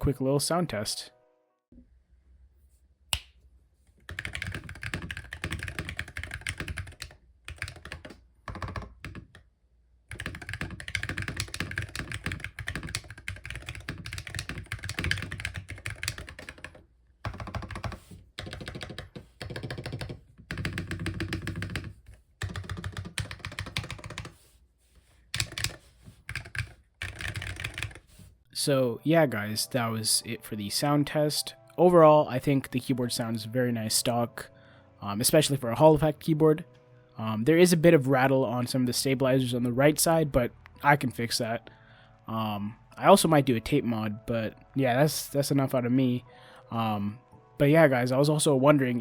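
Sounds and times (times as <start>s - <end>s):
keyboard typing: 4.0s - 9.5s, 10.1s - 24.4s, 25.3s - 28.2s.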